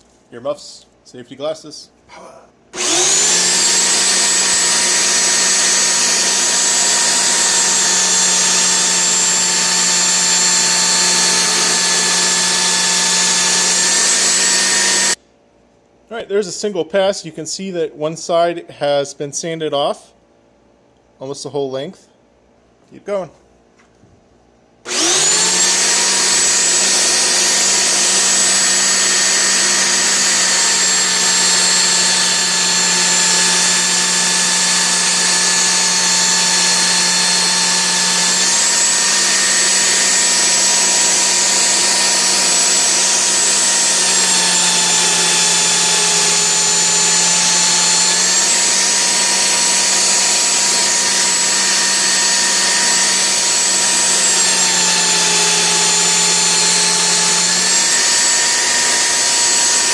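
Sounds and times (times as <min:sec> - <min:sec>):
electric belt sander running: 0:02.8 - 0:15.2, 0:24.9 - 0:59.9.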